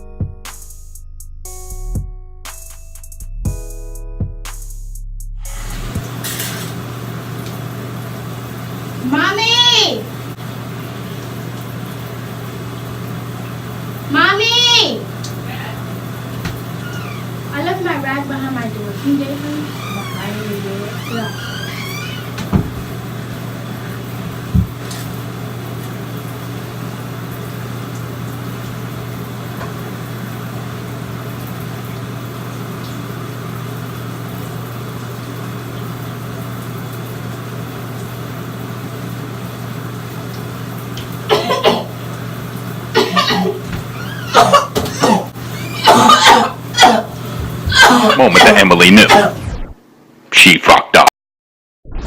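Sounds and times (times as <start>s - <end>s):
loud harsh coughs: 41.3s - 41.9s, 43.0s - 43.6s, 44.3s - 49.4s.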